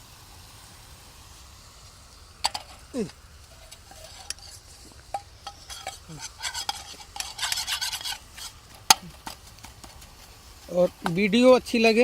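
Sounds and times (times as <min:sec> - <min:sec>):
spoon stirring and scraping a pan: 0:03.5 - 0:11.1.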